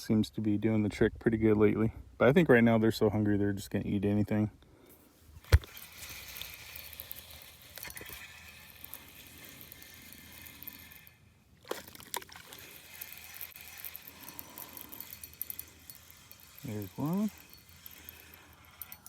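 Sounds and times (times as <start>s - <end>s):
fishing reel clicks: 11.7s - 19.0s.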